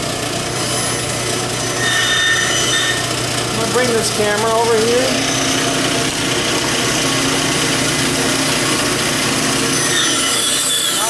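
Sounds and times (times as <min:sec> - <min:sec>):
bandsaw running: 0:00.0 - 0:11.0
high-pitched whine: 0:07.6 - 0:11.0.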